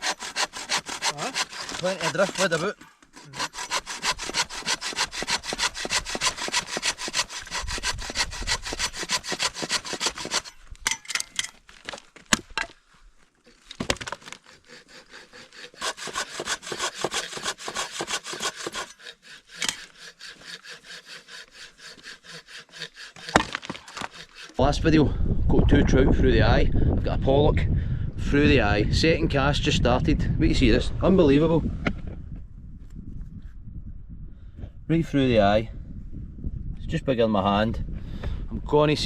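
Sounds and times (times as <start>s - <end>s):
hand saw cutting wood: 0.0s - 10.6s, 14.0s - 24.6s.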